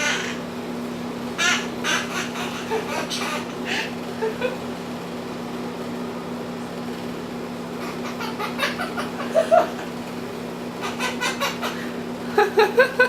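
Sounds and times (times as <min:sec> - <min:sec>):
air conditioner hum: 0:00.0 - 0:13.0
pet bird calls: 0:01.4 - 0:03.6, 0:10.8 - 0:11.8.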